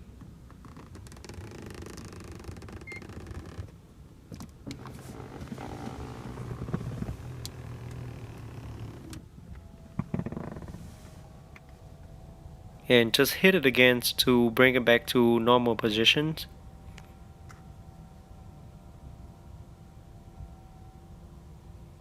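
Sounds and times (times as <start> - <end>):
seat motor humming: 4.4 - 13.3.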